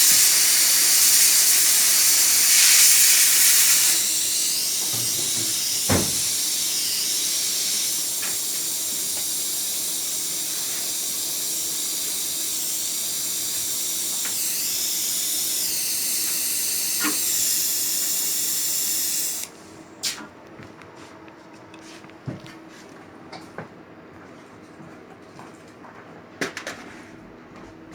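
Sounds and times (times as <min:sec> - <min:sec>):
gas torch hissing: 0:00.0 - 0:20.2.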